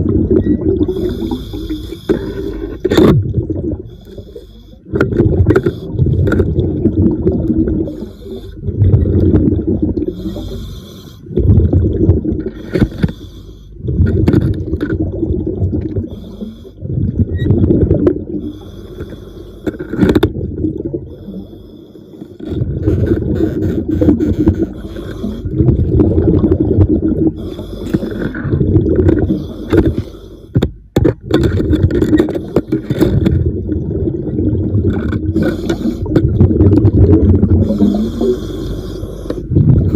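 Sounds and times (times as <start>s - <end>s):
underwater bubbles gurgling: 0.0s - 39.9s
hissing inhalations: 0.9s - 2.8s, 10.1s - 11.3s, 24.7s - 25.5s, 35.4s - 36.1s, 37.6s - 39.5s.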